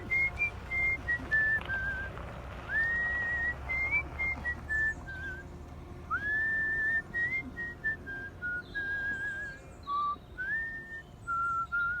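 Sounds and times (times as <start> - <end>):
person whistling a melody: 6.1 - 12.0.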